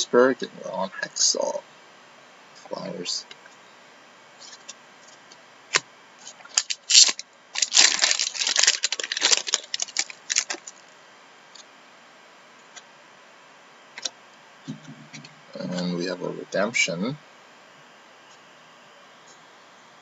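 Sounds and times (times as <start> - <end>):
packaging crinkling and tearing: 6.5 - 10.9.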